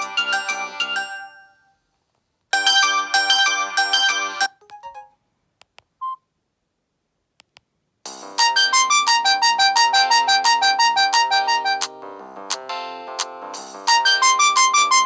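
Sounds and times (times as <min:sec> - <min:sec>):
electronic phone ringtone: 0:00.0 - 0:01.7, 0:02.6 - 0:05.1.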